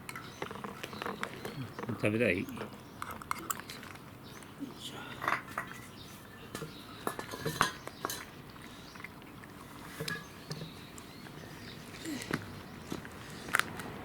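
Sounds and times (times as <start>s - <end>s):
food dish clinking: 6.5s - 8.3s.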